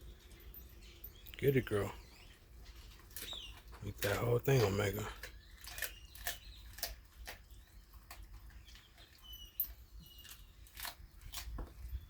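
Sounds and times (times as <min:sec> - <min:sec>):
faint bird chirp: 0:00.0 - 0:03.8, 0:07.5 - 0:10.8
dog chewing bones: 0:02.2 - 0:12.0.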